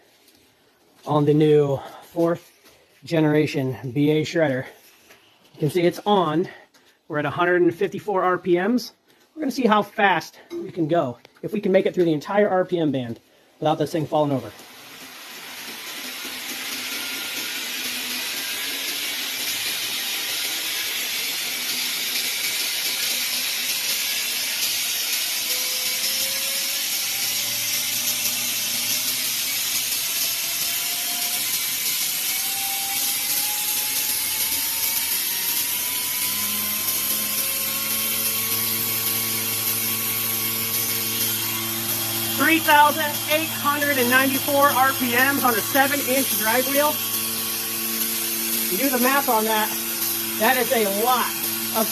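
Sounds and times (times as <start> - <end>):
belt grinder whine: 14.0 - 51.9.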